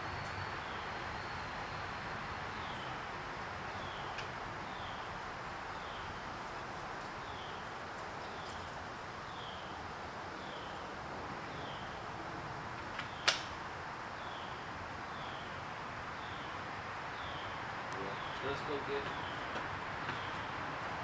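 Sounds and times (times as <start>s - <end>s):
outdoor hiss: 0.0s - 21.0s
bird chirping: 16.2s - 20.6s.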